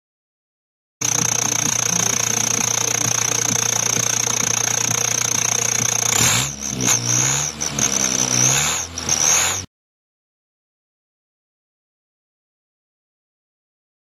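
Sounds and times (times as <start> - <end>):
car engine idling and revving: 1.0 - 9.7
high-pitched turbo whistle: 5.7 - 9.7.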